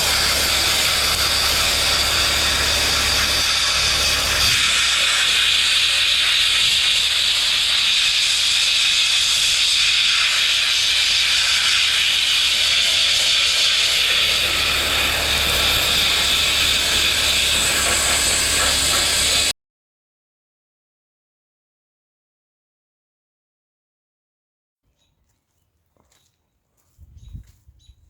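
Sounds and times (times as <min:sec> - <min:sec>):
low hum: 0:00.0 - 0:09.6
air tool hissing: 0:00.0 - 0:19.5.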